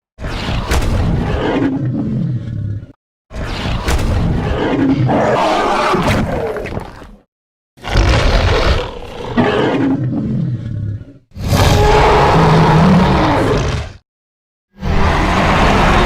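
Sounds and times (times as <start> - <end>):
deep rough creature roar: 4.4 - 7.2, 7.8 - 14.0, 14.8 - 16.0
steady creature roar: 4.4 - 7.2, 7.8 - 14.0, 14.8 - 16.0.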